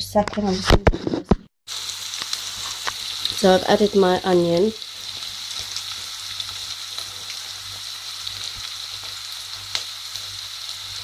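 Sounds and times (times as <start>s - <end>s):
onion sizzling in oil: 1.7s - 11.0s
small crackles of seeds: 2.1s - 3.4s.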